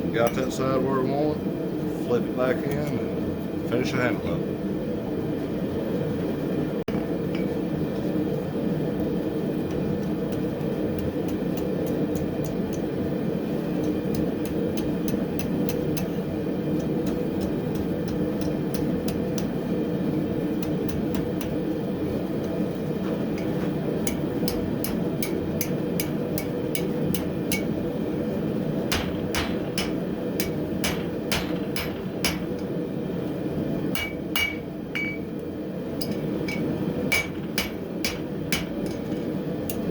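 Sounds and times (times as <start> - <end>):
hammer striking steel on anvil: 23.4 - 27.8, 28.9 - 32.7, 33.9 - 35.3, 36.0 - 39.1.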